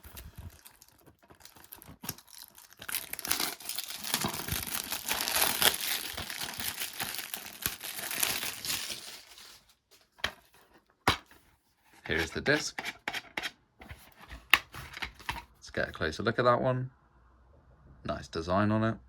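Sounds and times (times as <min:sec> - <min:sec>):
shrink-wrap crinkling and tearing: 0:00.0 - 0:10.5.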